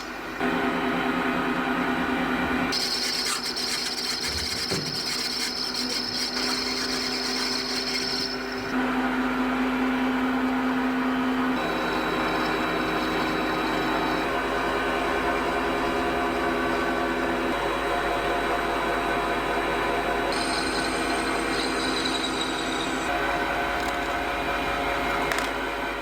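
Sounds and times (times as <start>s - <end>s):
electric power tool running: 2.7s - 9.0s, 11.6s - 25.6s
rasping grind: 2.8s - 8.8s.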